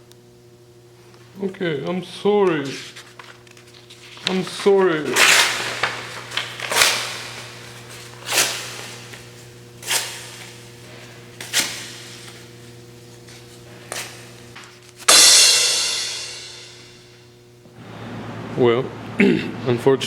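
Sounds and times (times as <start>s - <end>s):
steady hum: 0.0s - 20.0s
loud ringing strike: 15.1s - 17.4s.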